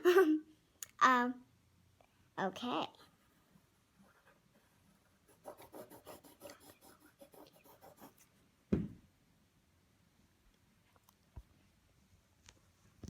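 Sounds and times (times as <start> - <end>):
pencil scratching on paper: 4.0 - 8.3.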